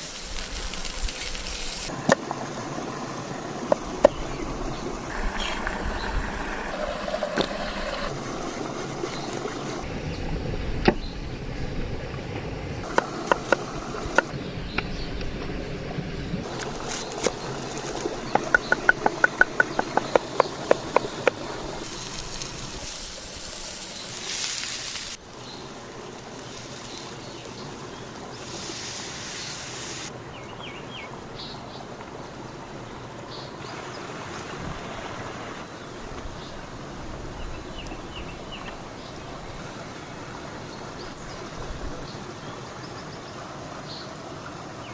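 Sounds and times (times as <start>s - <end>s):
steady background hiss: 0.0s - 44.9s
quick run of taps: 18.3s - 21.4s.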